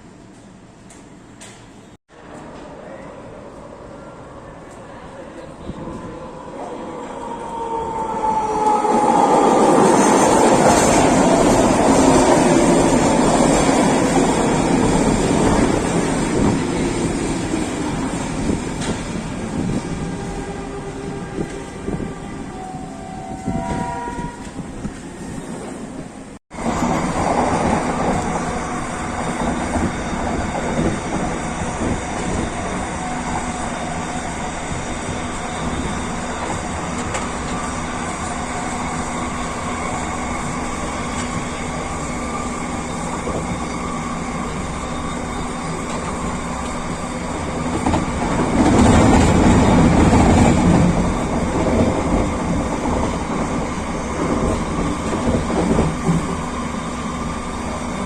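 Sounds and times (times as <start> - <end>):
train wheels rumbling: 0.3 - 58.0.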